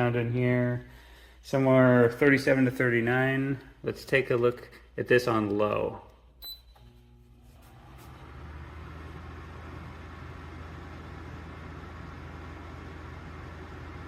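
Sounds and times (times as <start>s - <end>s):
dehumidifier fan running: 5.3s - 14.0s.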